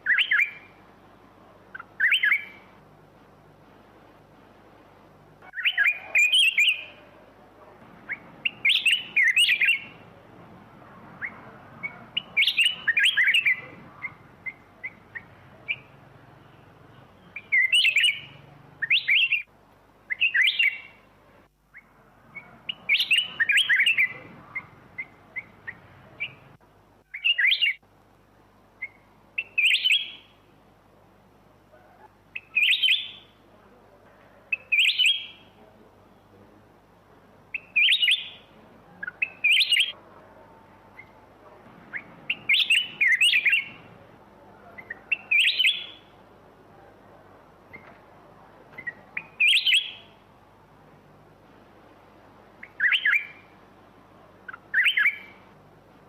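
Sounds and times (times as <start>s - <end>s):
bird chirping: 0.0s - 0.8s, 1.4s - 2.8s, 5.4s - 19.5s, 20.1s - 21.1s, 21.7s - 27.8s, 28.7s - 30.5s, 31.7s - 33.4s, 34.4s - 35.8s, 37.5s - 46.9s, 47.6s - 50.3s, 52.6s - 53.6s, 54.3s - 55.6s.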